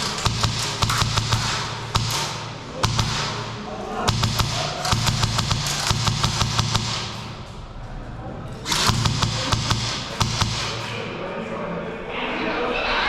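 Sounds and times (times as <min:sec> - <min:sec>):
airsoft rifle rapid clicking shots: 0:00.0 - 0:07.6, 0:08.7 - 0:11.2.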